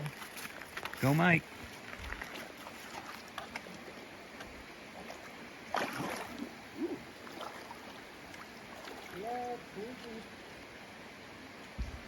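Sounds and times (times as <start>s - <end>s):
creek water over rocks: 0.0s - 12.0s
thump or splash: 5.7s - 6.3s.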